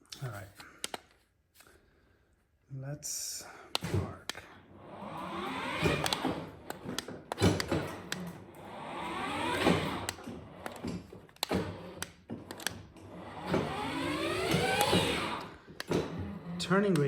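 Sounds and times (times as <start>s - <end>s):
electric motor whining: 4.7s - 17.0s
clicks and knocks: 5.2s - 17.0s.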